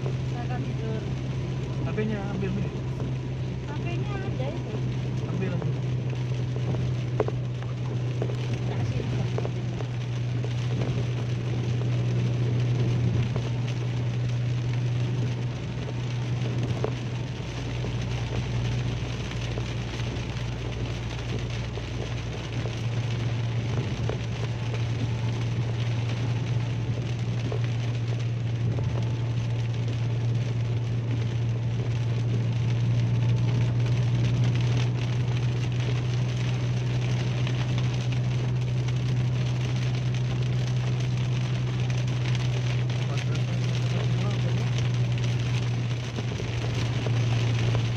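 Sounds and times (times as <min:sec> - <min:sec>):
car driving drone: 0:00.0 - 0:47.9
rain hissing on car: 0:00.0 - 0:47.9.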